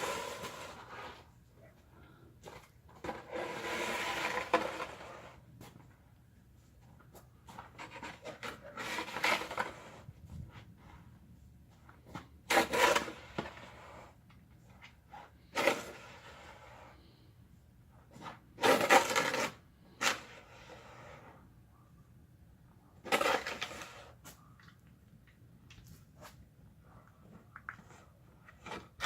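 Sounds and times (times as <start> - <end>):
snow shovel scraping: 0.0 - 1.2, 3.0 - 5.4, 7.8 - 10.1, 12.5 - 14.1, 15.5 - 16.9, 18.2 - 21.3, 23.0 - 24.2.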